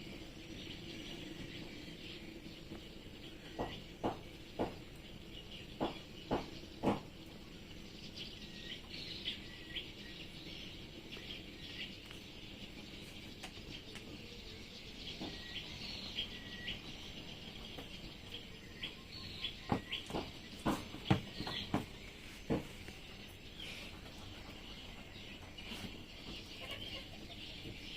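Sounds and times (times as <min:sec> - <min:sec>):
small birds chirping: 0:00.0 - 0:27.9
sharp knocks: 0:03.6 - 0:05.0, 0:05.7 - 0:07.2, 0:19.6 - 0:22.8.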